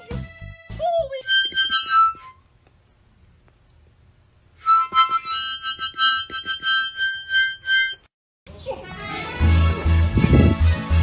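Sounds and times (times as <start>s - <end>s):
background music with high melody: 0.0s - 2.4s.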